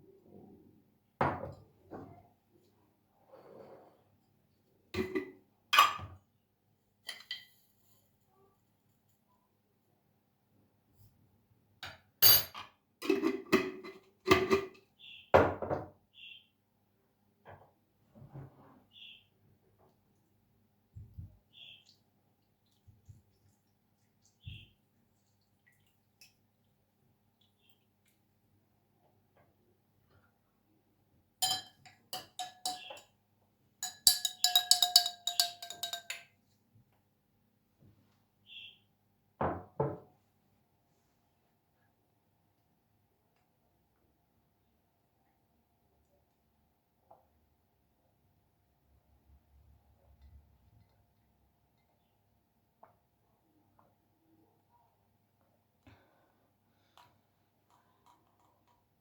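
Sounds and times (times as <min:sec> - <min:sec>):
hard items clinking and knocking: 0:33.8 - 0:36.2.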